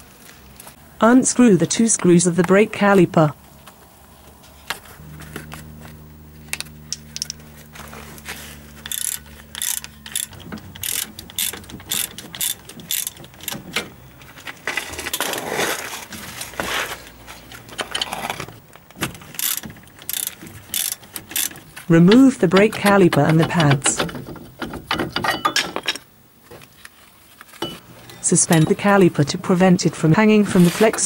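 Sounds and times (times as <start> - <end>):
steady low hum: 0.0 - 15.1, 16.3 - 24.6
ratchet wrench clicking: 6.5 - 7.4, 8.8 - 13.6, 19.4 - 21.6.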